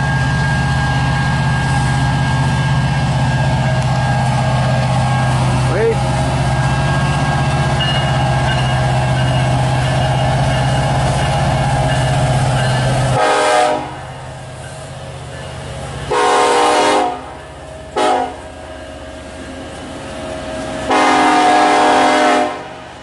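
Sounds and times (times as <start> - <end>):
locomotive horn blasts: 13.1 - 14.0, 16.1 - 17.3, 18.0 - 18.4, 20.9 - 22.8.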